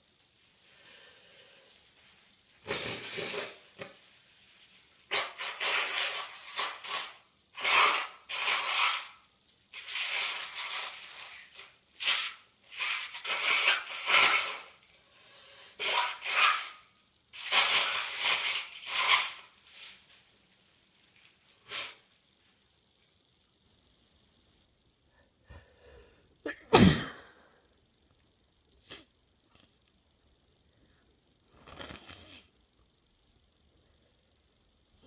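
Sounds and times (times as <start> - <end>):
woman sneezing: 26.5 - 27.3.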